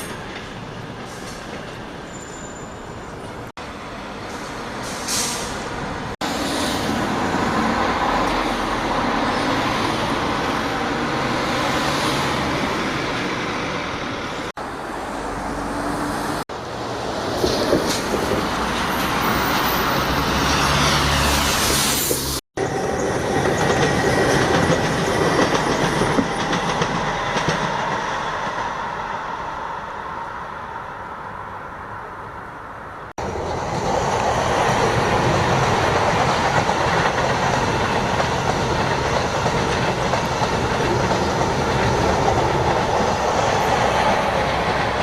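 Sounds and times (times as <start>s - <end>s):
buses and trains running: 0.0s - 45.0s
air brakes hissing: 4.2s - 5.7s.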